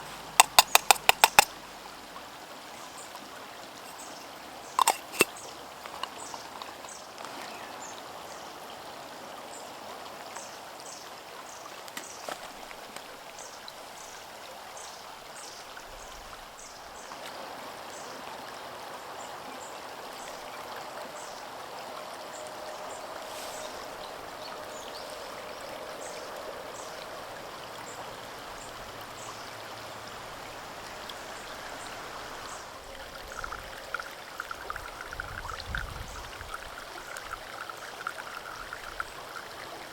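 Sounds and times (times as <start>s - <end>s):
rushing bubbling water: 32.8s - 39.9s.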